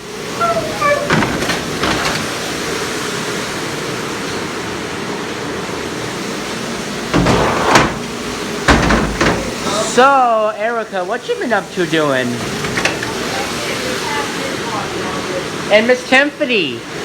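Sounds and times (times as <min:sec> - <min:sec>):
dishwasher water spraying: 0:00.0 - 0:04.6, 0:05.6 - 0:10.4
dishes clattering: 0:00.4 - 0:02.6, 0:07.2 - 0:09.9.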